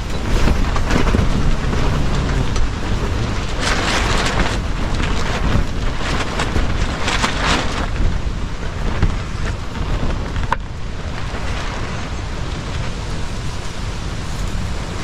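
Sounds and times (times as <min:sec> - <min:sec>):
stormy wind and rain: 0:00.0 - 0:15.0
wind rumble on microphone: 0:00.0 - 0:15.0.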